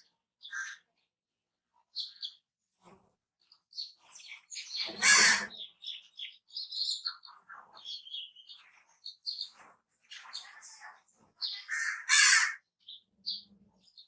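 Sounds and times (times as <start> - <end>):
loud harsh bird call: 4.8 - 5.8, 11.6 - 12.7.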